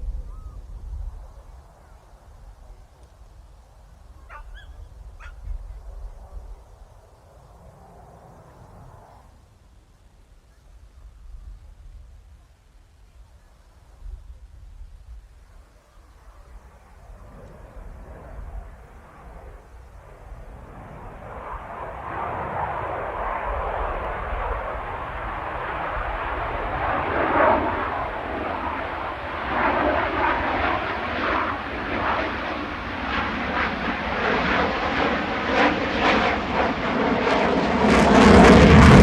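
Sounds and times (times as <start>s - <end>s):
fighter jet passing overhead: 4.2s - 9.4s, 16.5s - 39.0s.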